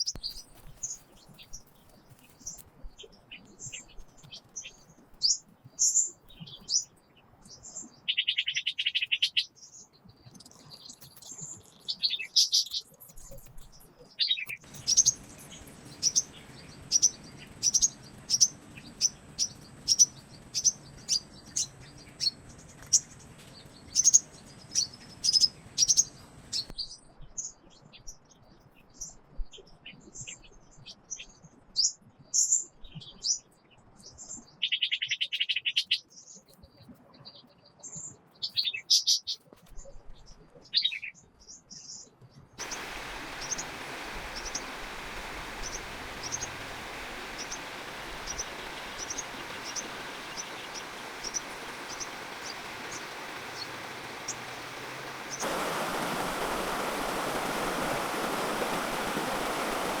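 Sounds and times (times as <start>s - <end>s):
birds chirping: 14.2s - 26.7s, 42.6s - 60.0s
forest stream rushing: 14.6s - 19.4s, 42.6s - 60.0s
buzzy bird trill: 14.7s - 23.1s, 42.6s - 60.0s.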